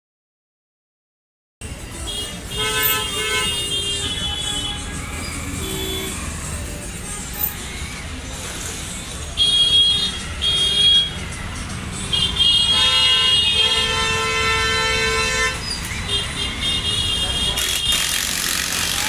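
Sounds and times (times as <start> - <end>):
traffic rumble: 1.6 - 19.0
vehicle horns honking: 2.0 - 6.3, 9.4 - 11.2, 12.1 - 18.2.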